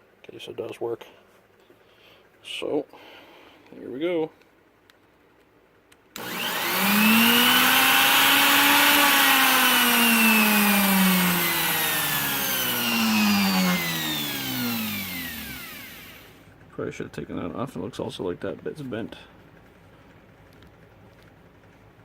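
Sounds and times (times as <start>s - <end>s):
router motor whining: 6.2s - 16.5s.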